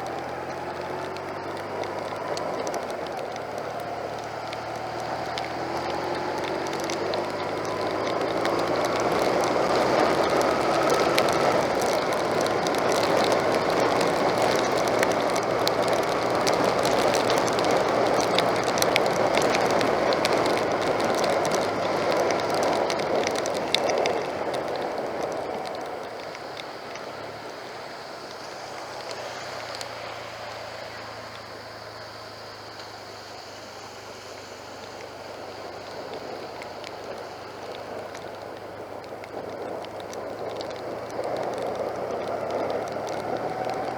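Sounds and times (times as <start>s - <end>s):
motorcycle engine accelerating: 0.0s - 27.3s
rain ticking: 0.0s - 43.9s
wind and wet road noise: 0.0s - 43.9s.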